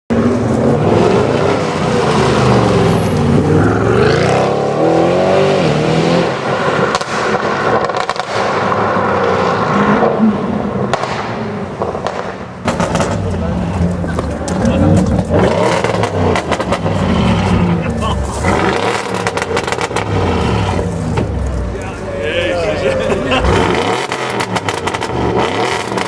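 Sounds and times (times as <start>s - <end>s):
car engine revving: 0.1s - 26.0s
exhaust pops and crackles: 10.9s - 21.9s, 23.6s - 26.0s.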